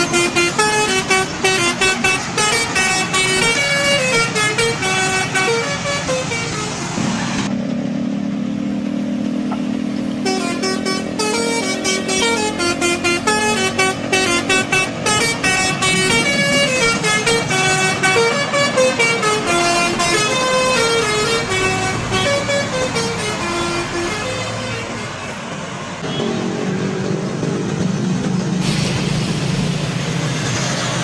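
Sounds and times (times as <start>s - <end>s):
low steady horn tone: 0.0s - 6.7s, 10.2s - 25.2s
musical air horn melody: 0.0s - 6.8s, 10.2s - 25.2s.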